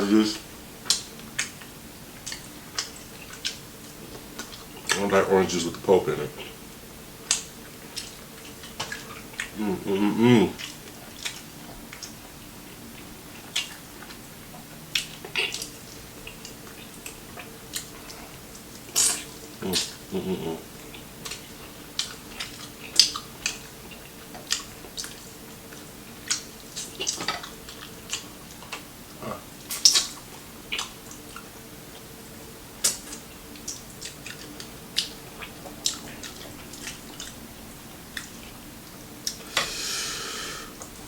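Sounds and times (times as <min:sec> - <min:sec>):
chewing crispy fried chicken: 0:00.0 - 0:41.0
faint steady hum: 0:00.0 - 0:41.0
wet mouth clicks: 0:19.0 - 0:20.0, 0:29.7 - 0:31.5, 0:39.2 - 0:39.8.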